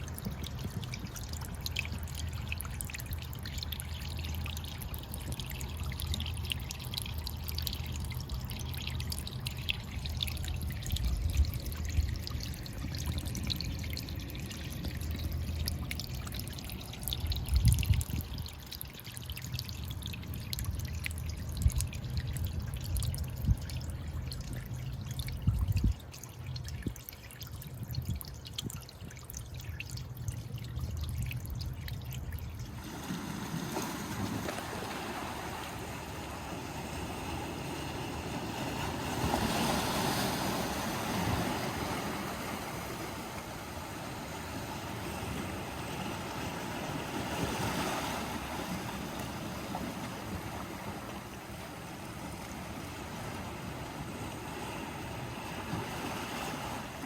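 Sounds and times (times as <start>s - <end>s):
water trickling between stones: 0.0s - 33.2s
waves washing against rocky shore: 32.7s - 57.0s.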